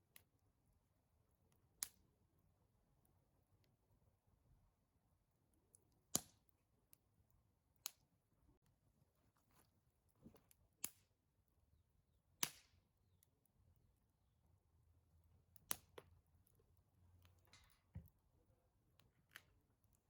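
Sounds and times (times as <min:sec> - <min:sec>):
wood fire crackling: 0:01.5 - 0:02.2, 0:05.5 - 0:11.2, 0:12.3 - 0:20.0
sharp fire pops: 0:12.4 - 0:12.7.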